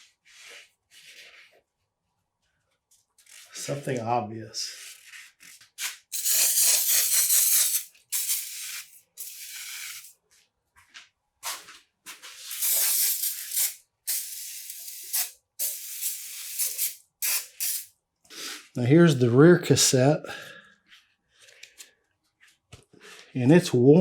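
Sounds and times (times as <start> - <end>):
pressurised spray hissing: 6.2 - 10.1, 12.5 - 17.9.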